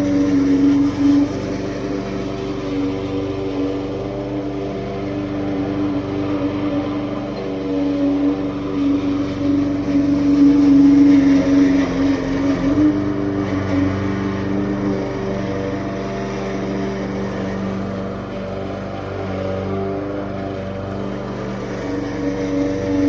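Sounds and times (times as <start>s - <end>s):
small gasoline engine running: 0.0s - 23.0s.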